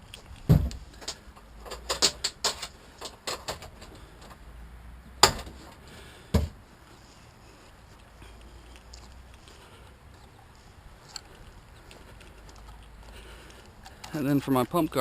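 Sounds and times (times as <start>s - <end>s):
heavy thumps: 0.4s - 0.9s, 5.2s - 6.6s.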